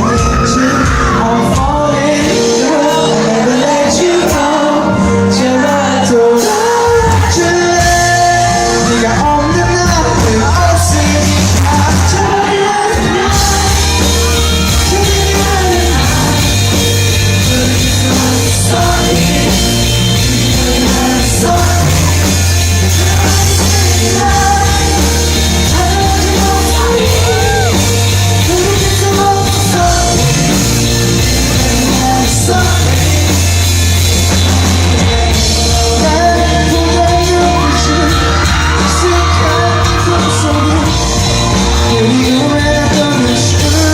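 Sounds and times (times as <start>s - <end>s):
lead singer singing: 0.0s - 43.9s
live pop-rock band playing: 0.0s - 43.9s
audience members yelling: 37.1s - 42.5s.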